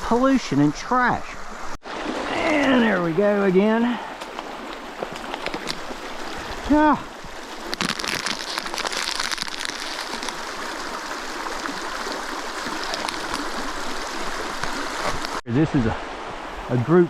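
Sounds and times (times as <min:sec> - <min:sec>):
creek babbling over rocks: 0:00.3 - 0:17.0
close-up crackle: 0:04.2 - 0:15.4.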